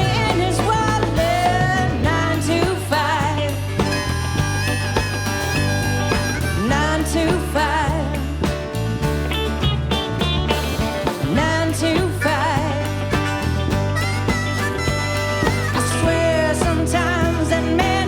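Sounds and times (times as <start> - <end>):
bass: 0.0 - 18.0
drums: 0.0 - 18.0
wavering lead melody: 3.8 - 7.1, 13.6 - 16.6.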